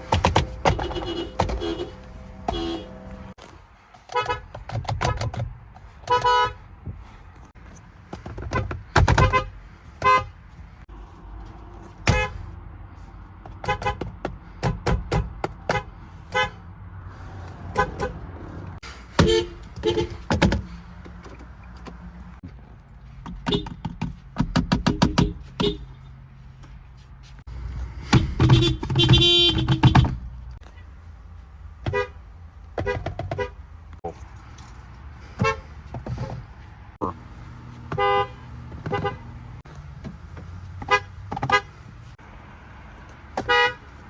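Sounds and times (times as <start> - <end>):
car horns honking: 0.0 - 3.4, 4.0 - 5.4, 6.0 - 6.7, 8.4 - 10.4, 11.0 - 12.5, 13.5 - 16.6, 17.6 - 20.7, 23.4 - 23.9, 24.8 - 26.0, 28.0 - 30.4, 31.8 - 32.2, 32.8 - 33.6, 35.3 - 35.8, 37.0 - 39.6, 40.8 - 41.8, 43.4 - 44.0.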